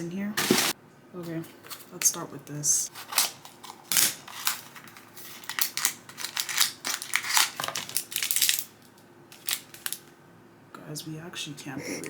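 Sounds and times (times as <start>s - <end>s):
packaging rustling and crunching: 0.4s - 0.8s, 2.9s - 10.1s.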